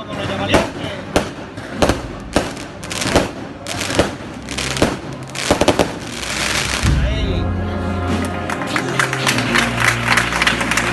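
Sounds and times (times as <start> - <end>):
fireworks bangs and crackling: 0.0 - 7.3.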